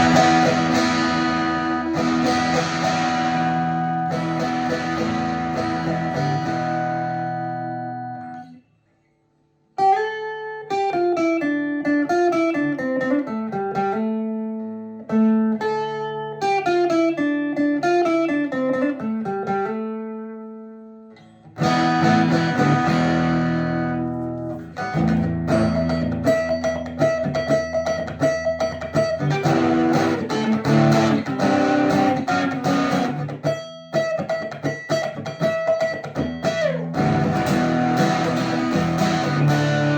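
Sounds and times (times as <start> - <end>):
amplified acoustic guitar: 0.0 - 39.9.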